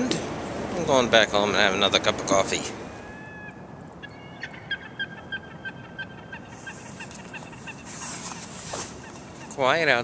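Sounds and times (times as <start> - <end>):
gull calling: 2.9 - 10.0.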